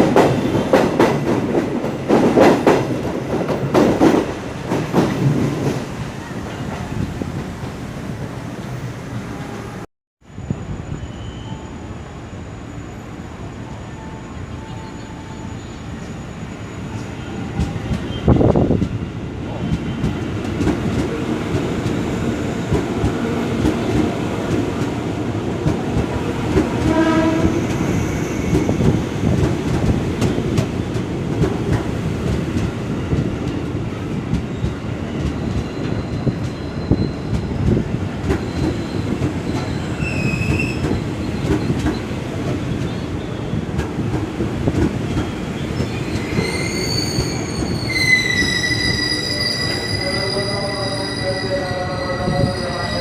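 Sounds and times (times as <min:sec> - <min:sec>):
train wheels clickety-clack: 0:00.0 - 0:07.9, 0:17.4 - 0:47.8
train horn blast: 0:26.8 - 0:27.7.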